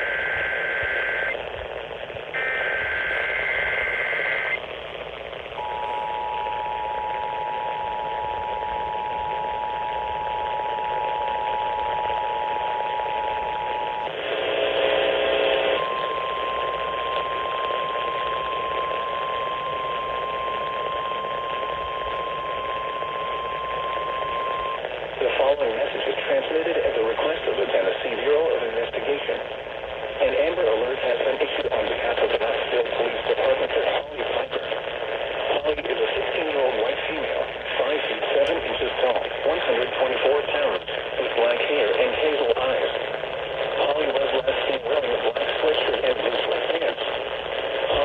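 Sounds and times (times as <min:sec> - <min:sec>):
jumble of tones: 0:00.0 - 0:48.0
radio hiss: 0:00.0 - 0:48.0
two-tone attention signal: 0:02.4 - 0:04.6, 0:05.6 - 0:14.1, 0:15.8 - 0:24.8
single steady tone: 0:05.6 - 0:14.1.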